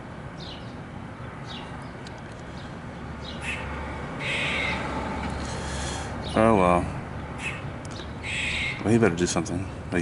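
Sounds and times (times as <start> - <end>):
squirrel alarm calls: 3.2 - 4.9, 7.4 - 9.0.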